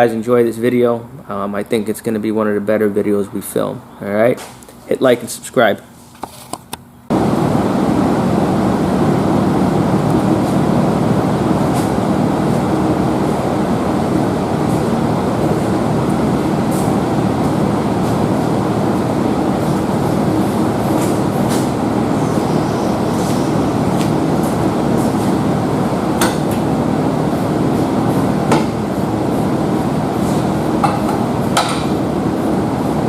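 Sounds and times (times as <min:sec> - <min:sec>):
machine running loudly: 0:07.1 - 0:33.0.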